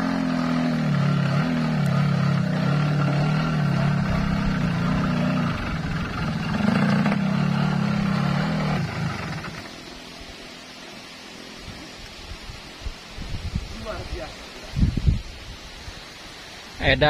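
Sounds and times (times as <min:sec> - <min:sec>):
two-stroke motorcycle engine: 0:00.0 - 0:10.1.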